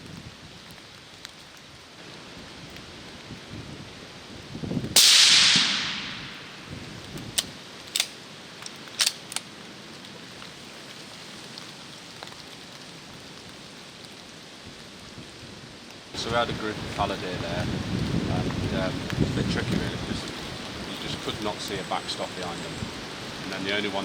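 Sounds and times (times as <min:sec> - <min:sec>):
rain hiss: 0:00.0 - 0:24.0
rifle shot: 0:05.0 - 0:06.7.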